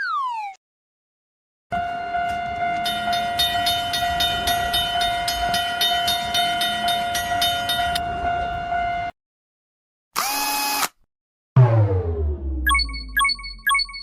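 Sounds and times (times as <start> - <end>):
long horn-like tone: 1.7 - 5.6, 8.0 - 9.1
rumbling train: 1.7 - 9.1
crossing bell ringing: 1.8 - 9.1.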